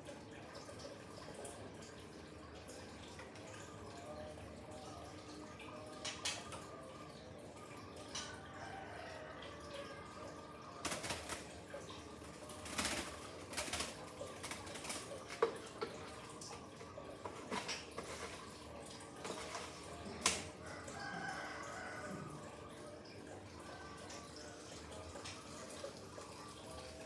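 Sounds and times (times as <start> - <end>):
faint dripping water: 0.0 - 27.0
bird flapping wings: 10.8 - 11.6, 12.3 - 15.3.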